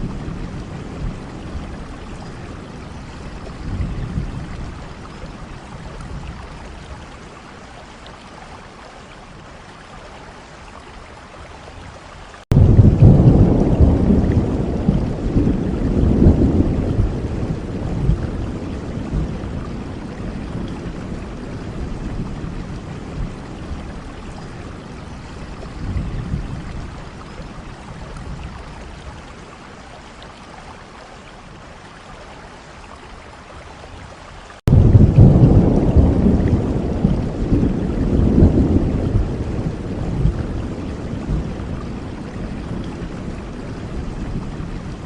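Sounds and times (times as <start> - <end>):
steady rain: 0.0 - 45.0
thunder rumbling: 12.5 - 24.9, 34.7 - 45.0.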